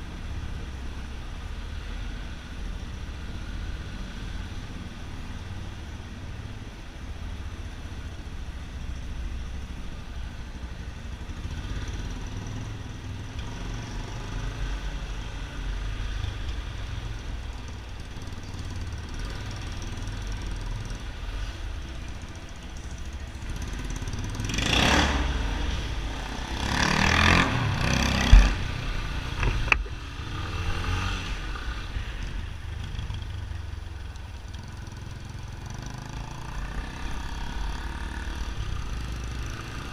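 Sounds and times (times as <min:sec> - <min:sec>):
exhaust crack: 0:24.7 - 0:30.0
engine revving roughly: 0:26.4 - 0:28.7
motorcycle engine idling: 0:32.4 - 0:36.1.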